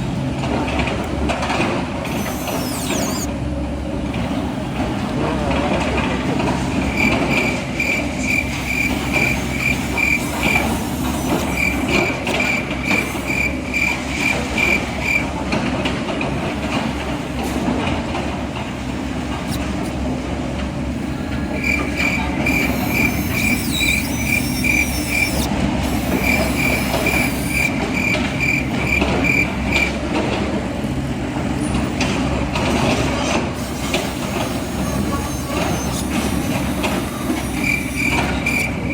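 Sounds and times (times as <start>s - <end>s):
reversing alarm beeping: 2.1s - 3.3s, 6.9s - 15.2s, 21.0s - 30.0s, 33.6s - 38.9s.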